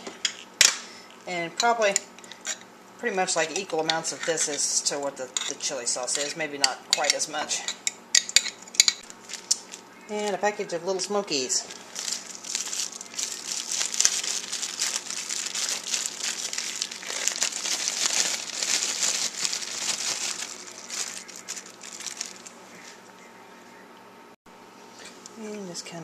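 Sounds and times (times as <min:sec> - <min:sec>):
plastic package crinkling: 0:09.0 - 0:09.8, 0:11.7 - 0:23.0.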